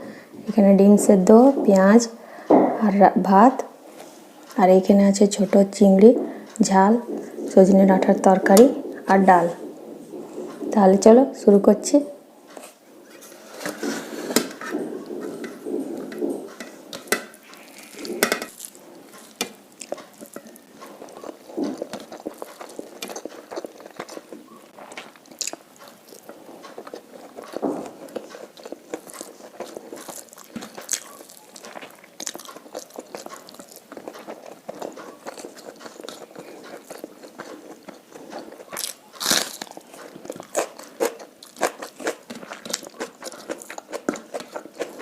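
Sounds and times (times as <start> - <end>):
close chewing and biting: 12.5 - 45.0.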